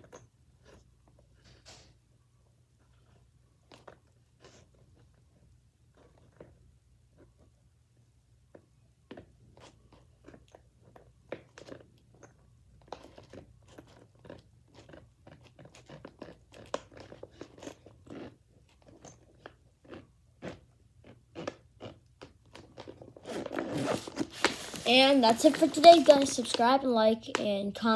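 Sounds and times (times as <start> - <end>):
zipper pulled slowly: 21.4 - 26.2.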